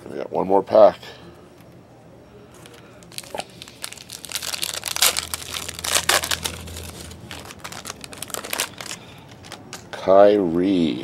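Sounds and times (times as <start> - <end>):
wrapper tearing and crinkling: 3.0 - 9.7.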